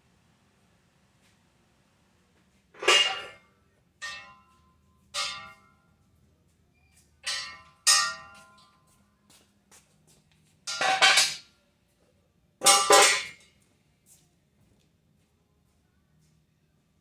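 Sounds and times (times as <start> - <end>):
steel clanging and ringing: 4.0 - 4.5, 5.2 - 5.7, 7.2 - 8.4.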